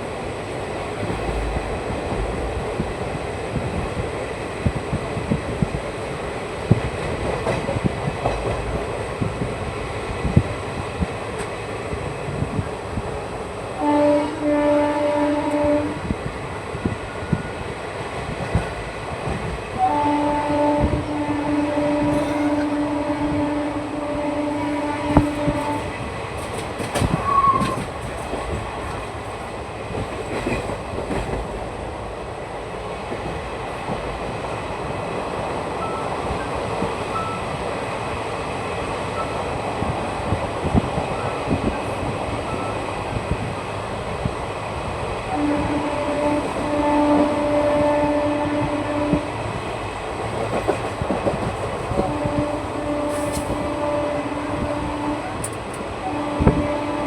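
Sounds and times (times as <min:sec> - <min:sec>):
train coaches rumbling: 0:00.0 - 0:57.0
train horn blast: 0:13.8 - 0:16.1, 0:19.8 - 0:26.1, 0:45.3 - 0:49.5, 0:51.9 - 0:57.0
wheels clicking over rail joints: 0:25.0 - 0:31.7, 0:49.6 - 0:53.9, 0:55.3 - 0:55.9.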